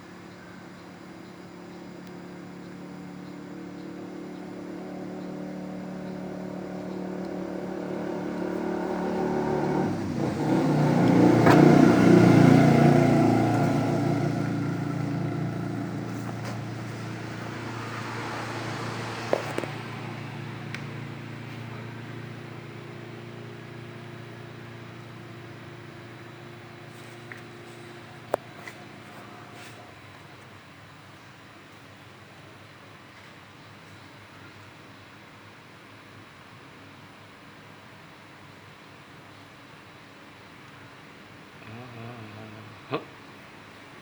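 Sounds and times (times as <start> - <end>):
vehicle passing by: 1.0 - 30.2, 41.6 - 42.7.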